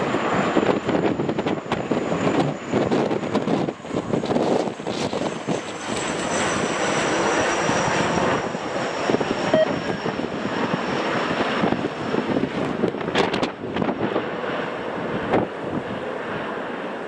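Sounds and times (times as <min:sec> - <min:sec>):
wind buffeting microphone: 0:00.0 - 0:16.5
jet engines roaring with whine: 0:00.0 - 0:17.0.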